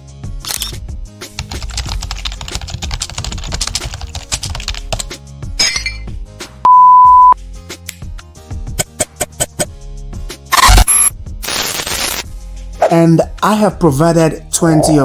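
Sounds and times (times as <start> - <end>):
background music: 0.0 - 6.7, 7.3 - 15.0
rapid typing clicks: 1.4 - 5.1
single-pitch bleep: 6.6 - 7.4.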